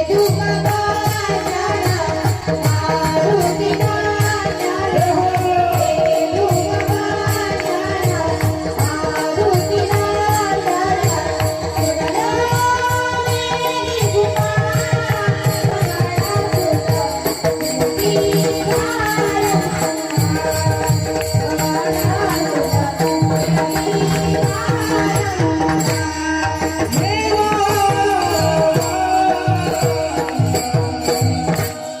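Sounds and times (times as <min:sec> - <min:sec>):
man singing: 0:23.9 - 0:32.0.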